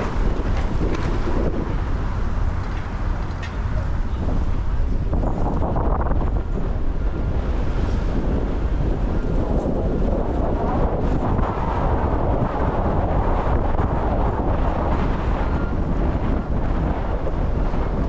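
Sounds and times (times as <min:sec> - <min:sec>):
car driving on wet streets: 0:00.0 - 0:18.0
wind buffeting microphone: 0:00.0 - 0:18.0.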